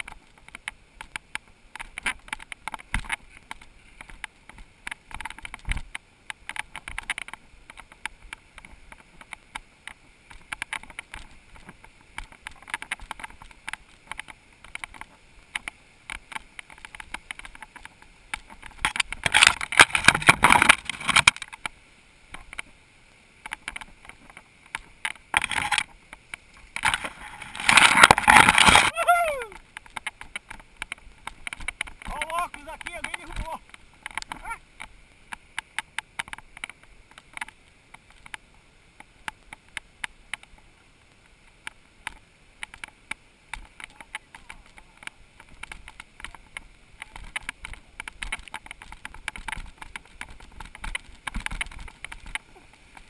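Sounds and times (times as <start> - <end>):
mountain bike rattling on trail: 0.0 - 22.8, 23.4 - 53.0
rushing scraping noise: 26.6 - 30.6.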